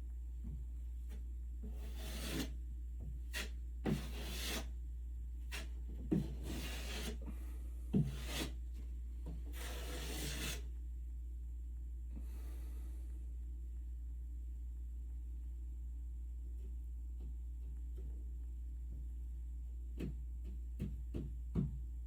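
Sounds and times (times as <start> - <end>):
steady low hum: 0.0 - 22.0
hand tool scraping drywall ceiling: 1.6 - 2.6, 3.3 - 4.7, 5.5 - 8.6, 9.4 - 10.7.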